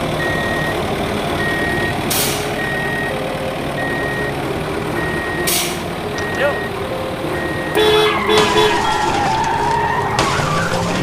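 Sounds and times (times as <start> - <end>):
engine hum: 0.0 - 11.0
truck reversing alarm beeping: 0.0 - 11.0.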